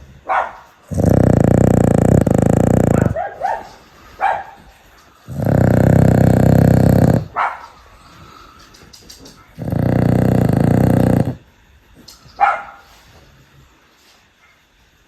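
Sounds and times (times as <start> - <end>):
dog snoring: 0.8 - 3.4, 4.1 - 12.2
wheezy dog breaths: 0.8 - 14.4.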